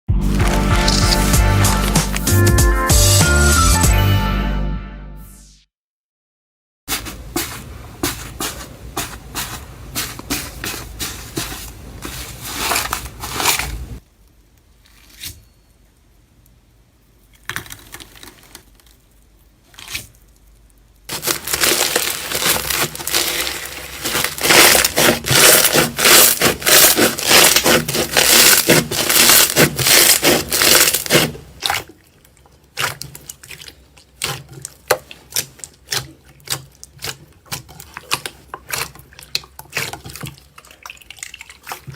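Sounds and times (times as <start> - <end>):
slime crackling and popping: 0.2 - 2.4, 17.4 - 31.9, 32.7 - 40.4.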